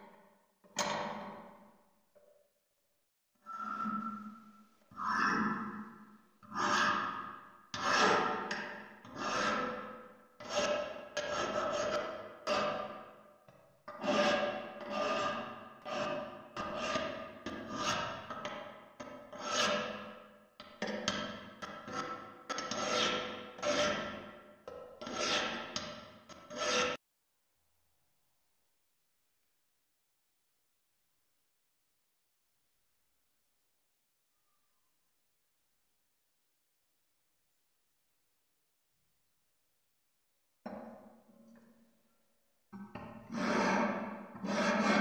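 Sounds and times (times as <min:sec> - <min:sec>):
file rasping on steel: 0:06.5 - 0:13.1, 0:13.9 - 0:20.4, 0:21.0 - 0:27.0, 0:43.3 - 0:45.0
hand tool scraping rusty metal: 0:13.9 - 0:20.3, 0:21.0 - 0:27.0.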